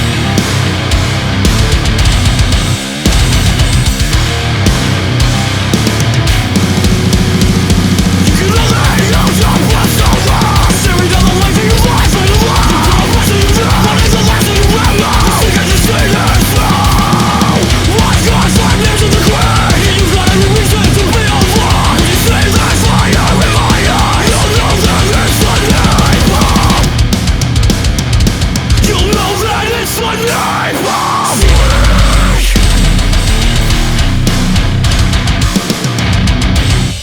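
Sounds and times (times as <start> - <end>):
heavy metal music: 0.0 - 37.0.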